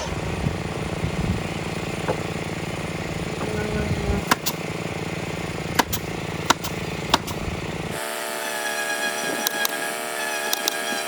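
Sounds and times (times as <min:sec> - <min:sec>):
machine hum: 0:00.0 - 0:11.0
hammer striking nails: 0:04.3 - 0:04.6, 0:05.8 - 0:07.4.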